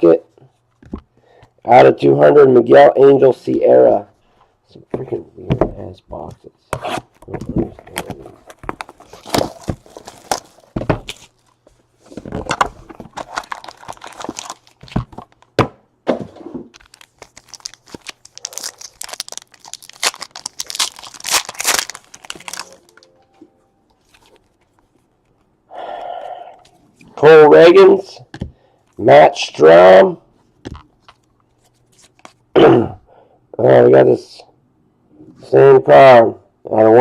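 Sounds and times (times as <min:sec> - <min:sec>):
wrappers tearing and crinkling: 0:07.8 - 0:11.6, 0:12.3 - 0:15.4, 0:16.7 - 0:23.1, 0:24.0 - 0:24.9.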